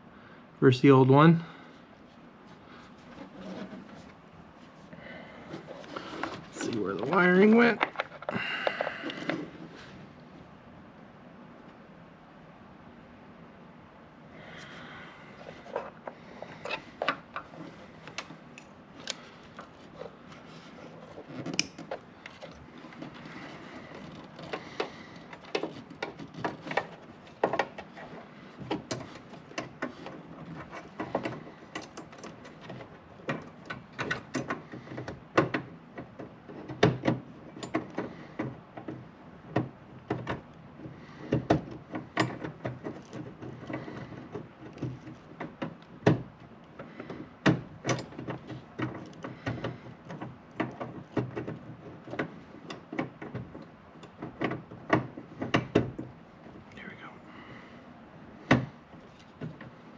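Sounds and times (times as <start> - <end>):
plastic clicks and rattles: 6.2 - 9.5.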